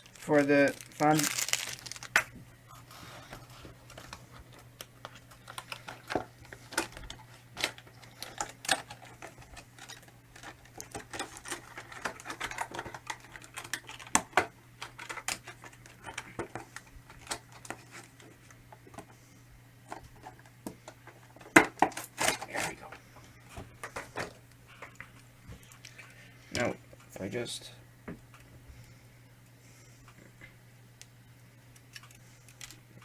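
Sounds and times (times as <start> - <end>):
steady low hum: 0.0 - 33.0
plastic parts clicking and tapping: 5.1 - 17.8.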